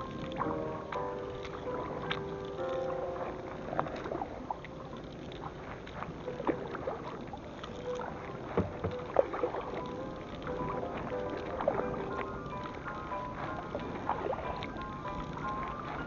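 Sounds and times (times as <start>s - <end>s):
paddle strokes splashing: 0.0s - 16.0s
wash of moving water: 0.0s - 16.0s
small knocks: 8.5s - 9.4s.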